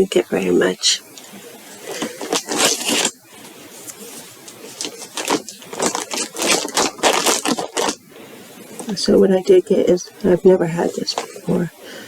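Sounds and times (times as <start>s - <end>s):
packaging rustling and scraping: 1.1s - 9.6s, 10.8s - 11.7s.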